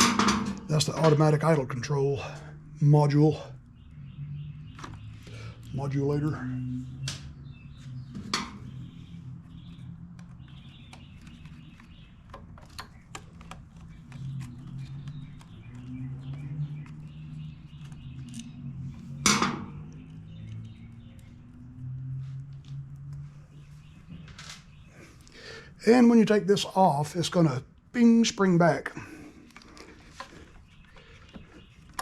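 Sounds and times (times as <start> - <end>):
hand tools clicking and knocking: 0.0 - 1.5.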